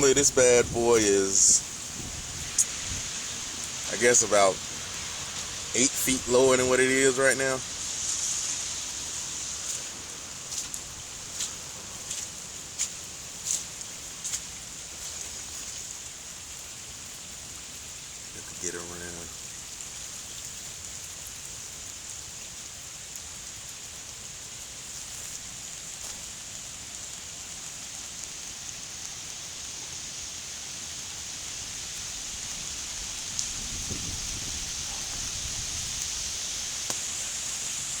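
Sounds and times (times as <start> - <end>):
microphone wind rumble: 0.0 - 3.6, 33.4 - 36.3
creek water rushing: 0.0 - 38.0.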